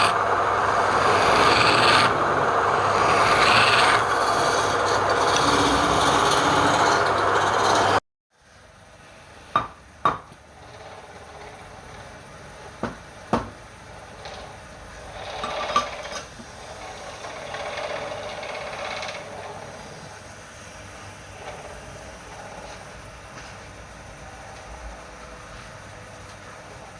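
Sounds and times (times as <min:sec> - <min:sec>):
tool scraping wood on lathe: 0:00.0 - 0:08.0, 0:10.4 - 0:12.8, 0:14.0 - 0:20.2, 0:21.3 - 0:23.5
steady hum: 0:00.0 - 0:26.9.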